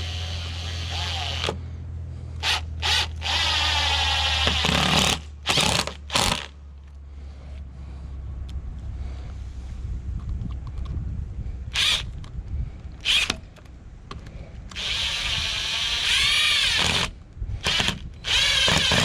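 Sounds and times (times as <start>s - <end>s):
power drill driving screws: 0.0s - 1.6s, 2.4s - 6.5s, 11.7s - 12.1s, 13.0s - 13.4s, 14.8s - 19.0s
steady low hum: 0.0s - 19.0s.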